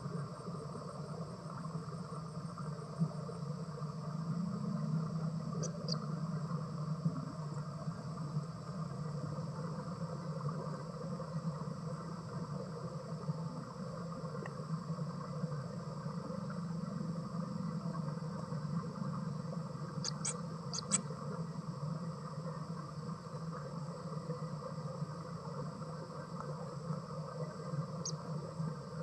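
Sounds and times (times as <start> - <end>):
low hum: 0.1 - 29.0
high insect-like drone: 19.8 - 21.3
high chirps: 20.0 - 21.0.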